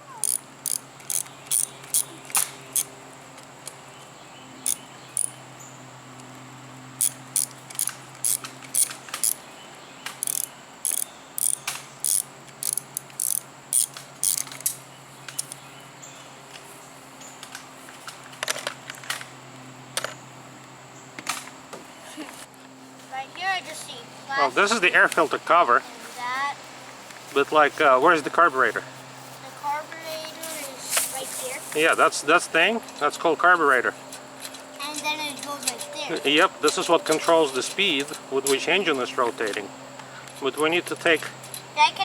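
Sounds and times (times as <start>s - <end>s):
ratchet wrench clicking: 0.2s - 2.9s, 7.0s - 9.4s, 10.2s - 14.6s.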